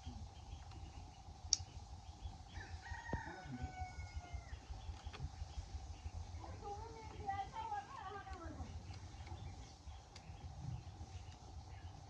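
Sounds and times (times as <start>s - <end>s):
sharp click: 1.5s - 1.7s
rooster crowing: 2.5s - 4.7s.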